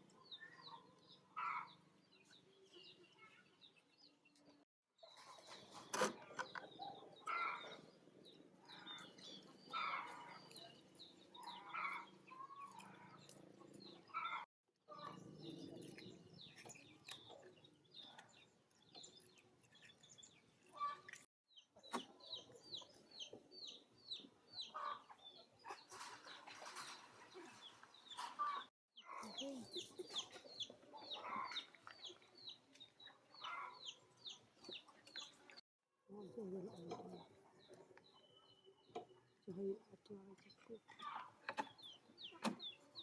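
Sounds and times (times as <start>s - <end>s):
chickens clucking: 21.9s - 35.4s.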